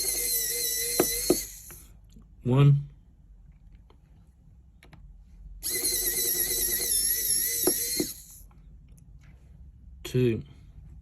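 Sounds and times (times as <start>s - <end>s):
electric screwdriver whining: 0.0s - 1.8s, 5.6s - 8.4s.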